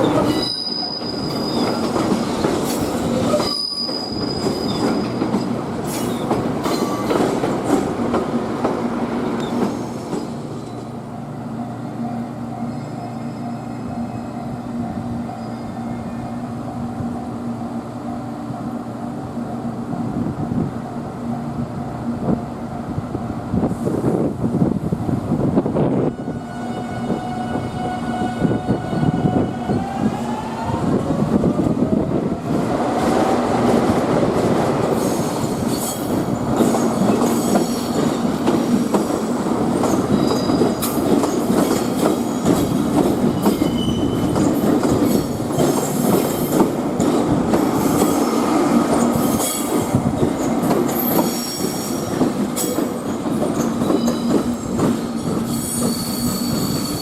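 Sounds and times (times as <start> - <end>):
high-pitched flange squeals: 0.0 - 1.8, 55.5 - 57.0.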